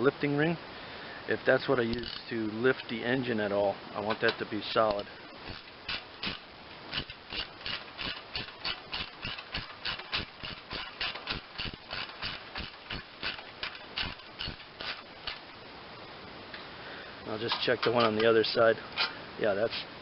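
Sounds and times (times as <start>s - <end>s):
ratchet wrench clicking: 1.9s - 2.3s, 4.9s - 15.4s.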